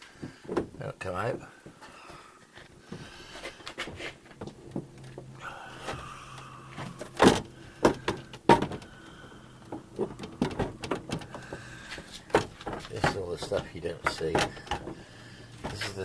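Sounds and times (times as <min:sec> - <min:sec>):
metal door clicks and knocks: 0:10.0 - 0:11.4.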